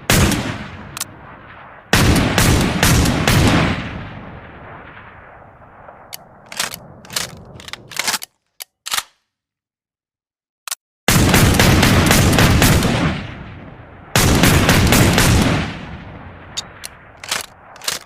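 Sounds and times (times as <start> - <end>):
sharp clicks: 6.1 - 9.2, 16.6 - 18.0.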